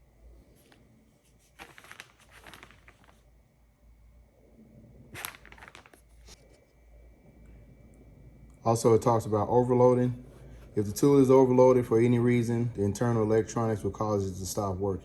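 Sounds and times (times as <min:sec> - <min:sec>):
paper rustling and crinkling: 0:00.4 - 0:03.3, 0:05.1 - 0:06.6.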